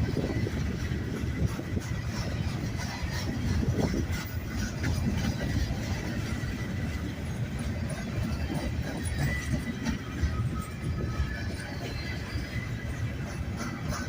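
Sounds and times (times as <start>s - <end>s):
freight train rolling on rails: 0.0s - 14.0s
wind buffeting microphone: 0.0s - 14.0s
faint wheel squeal: 8.1s - 14.0s.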